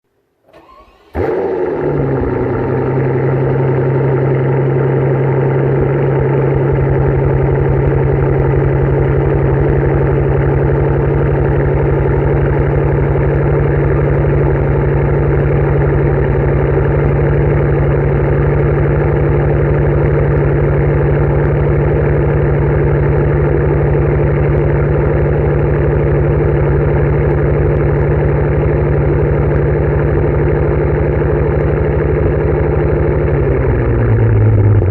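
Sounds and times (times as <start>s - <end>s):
car engine cranking: 0.5s - 4.2s
car engine idling: 0.5s - 34.9s.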